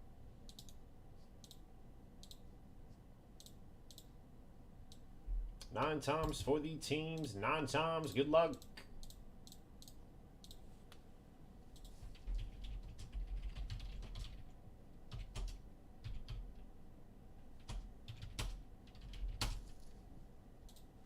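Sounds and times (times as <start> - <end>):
computer keyboard clicks: 0.5 - 0.8, 11.8 - 14.4, 15.1 - 16.6, 17.6 - 19.7.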